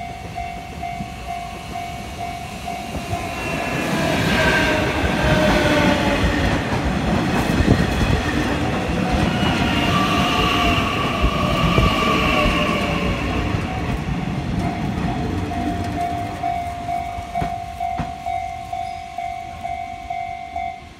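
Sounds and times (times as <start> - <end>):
train wheels rumbling on rail: 0.0 - 20.9
level crossing alarm ringing: 9.6 - 20.9.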